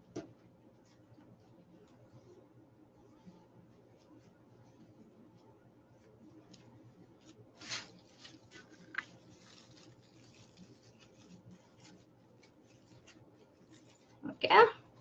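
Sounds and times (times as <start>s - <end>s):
ribbon rustling and crinkling: 6.2s - 15.0s.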